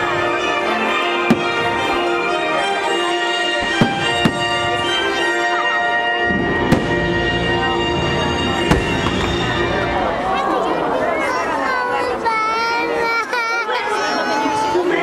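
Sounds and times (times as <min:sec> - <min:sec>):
fireworks bangs: 0:01.2 - 0:02.2, 0:03.6 - 0:05.0, 0:06.2 - 0:09.9.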